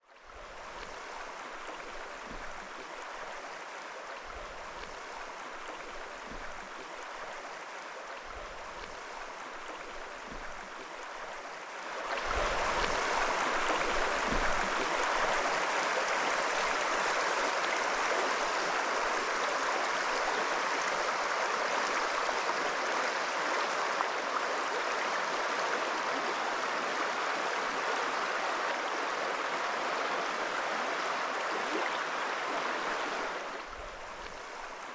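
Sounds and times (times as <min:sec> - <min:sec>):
stream water flowing: 0:00.0 - 0:34.9
faint low thumps: 0:13.7 - 0:15.4.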